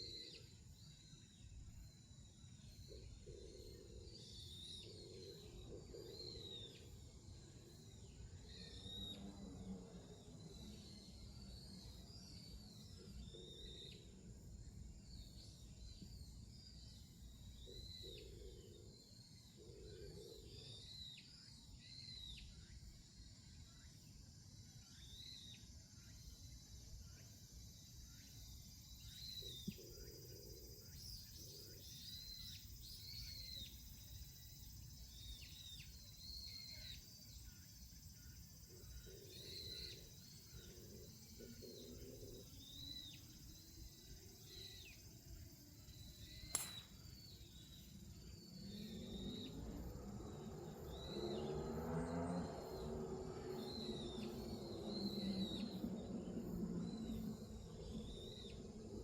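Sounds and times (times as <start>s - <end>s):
low rumble of wind: 34.3s - 59.0s
faint steady hiss: 42.8s - 47.6s
sharp click: 46.4s - 47.3s.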